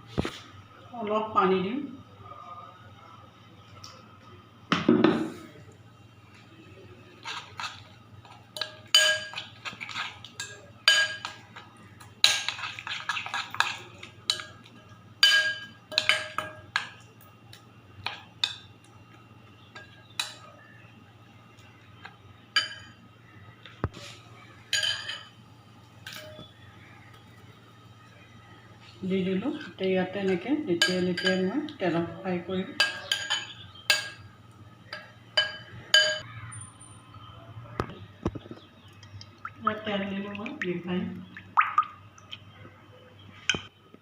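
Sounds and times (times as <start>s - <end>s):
spoon clinking against a bowl: 7.2s - 11.6s, 12.2s - 17.0s, 22.6s - 23.0s, 24.7s - 25.4s, 29.6s - 31.5s, 32.8s - 34.3s, 34.9s - 36.2s.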